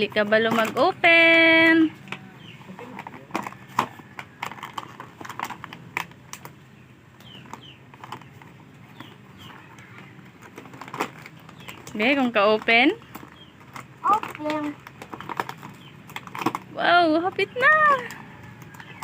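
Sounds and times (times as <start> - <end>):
toy box being handled clicks: 13.1 - 16.7.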